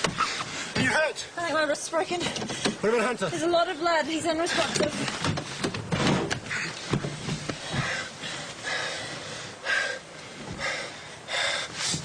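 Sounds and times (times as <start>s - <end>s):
person breathing heavily: 6.4s - 12.0s.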